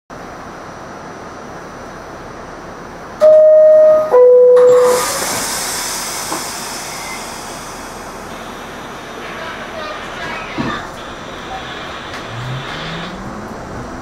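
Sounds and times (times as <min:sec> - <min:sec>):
two-tone door chime: 0:03.2 - 0:05.2
air hiss: 0:04.7 - 0:09.4.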